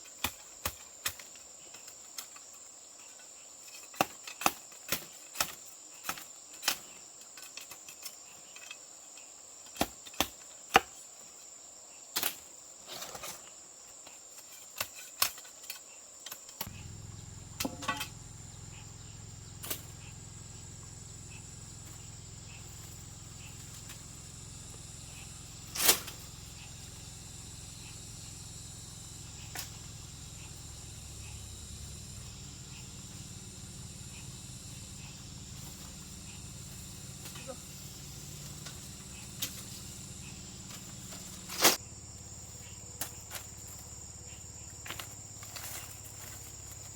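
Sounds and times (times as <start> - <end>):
insects chirring: 0.0 - 46.9
low steady hum: 16.7 - 46.5.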